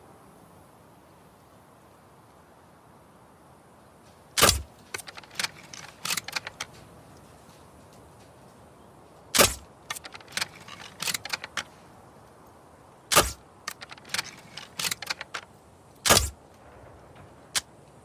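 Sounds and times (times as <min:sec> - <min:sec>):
crossbow shot release: 0:04.4 - 0:06.6, 0:09.4 - 0:11.6, 0:13.1 - 0:15.4, 0:16.0 - 0:16.4
mechanical clicks and rattles: 0:04.4 - 0:06.9, 0:09.4 - 0:11.7, 0:13.1 - 0:16.4.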